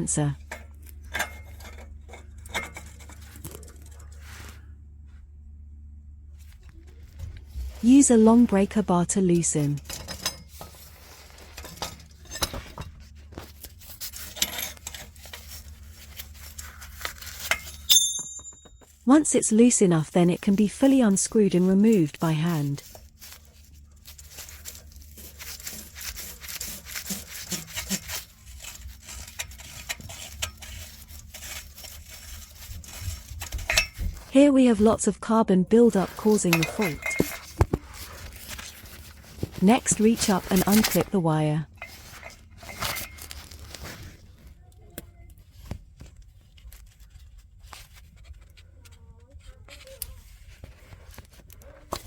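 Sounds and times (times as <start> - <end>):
steady low hum: 0.0 - 52.0
metal scraping and clicking: 0.2 - 4.2, 7.9 - 19.2, 20.4 - 34.4, 35.9 - 44.2.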